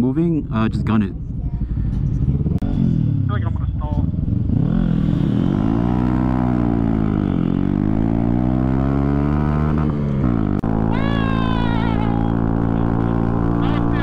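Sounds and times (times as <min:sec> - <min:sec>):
motorcycle engine accelerating: 0:00.0 - 0:14.0.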